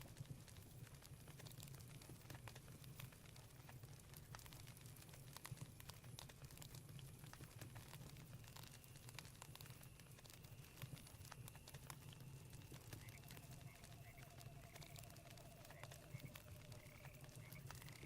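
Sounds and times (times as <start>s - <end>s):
campfire crackling and popping: 0.0s - 18.0s
faint steady high tone: 10.5s - 18.0s.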